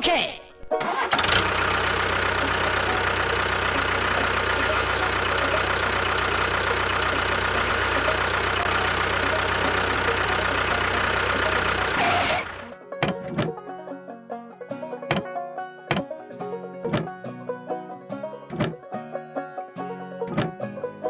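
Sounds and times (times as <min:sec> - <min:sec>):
small engine idling with whine: 0:00.8 - 0:13.5.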